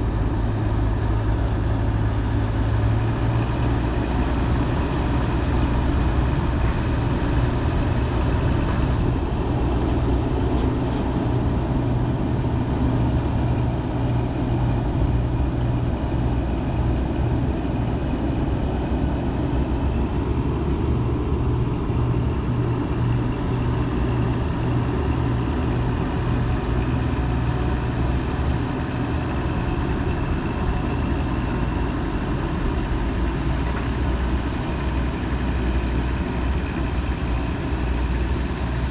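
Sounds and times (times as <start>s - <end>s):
heavy diesel engine running: 0.0s - 38.9s.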